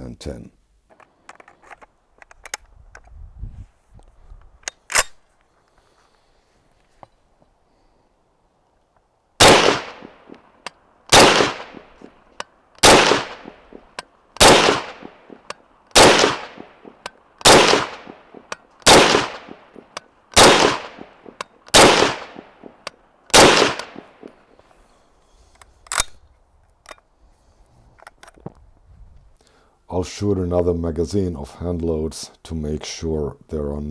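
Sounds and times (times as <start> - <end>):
sharp rifle click: 4.6 - 5.3, 9.4 - 24.4, 25.6 - 26.2
rifle shots echoing: 9.4 - 12.1, 12.8 - 24.5.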